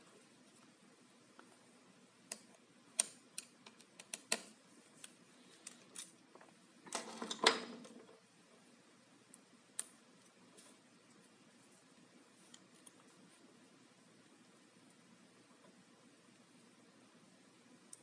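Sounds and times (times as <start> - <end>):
light clicks and taps of parts: 2.3 - 6.6
rustling: 10.1 - 16.7.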